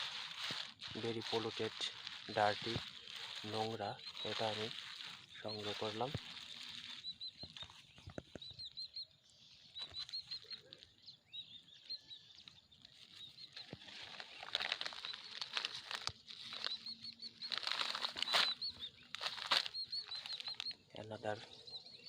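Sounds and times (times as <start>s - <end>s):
plastic litter rustling: 0.0s - 7.0s, 13.7s - 16.7s, 17.5s - 20.5s
small birds chirping: 0.0s - 22.0s.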